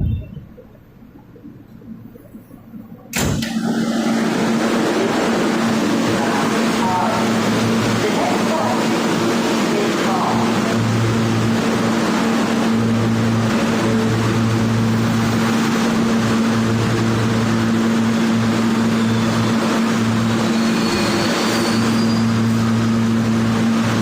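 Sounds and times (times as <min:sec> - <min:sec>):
subway car rumbling on track: 0:00.0 - 0:24.0
faint high squeal: 0:20.4 - 0:22.5.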